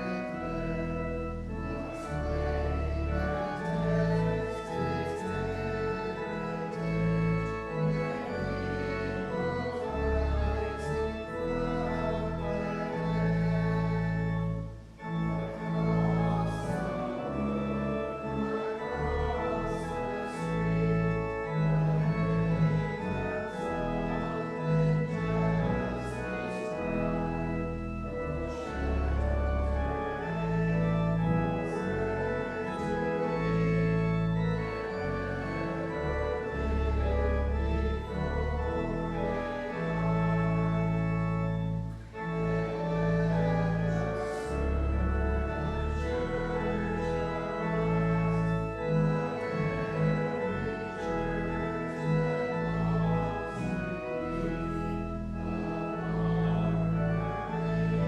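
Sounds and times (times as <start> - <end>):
church organ playing a hymn: 0.0 - 58.0.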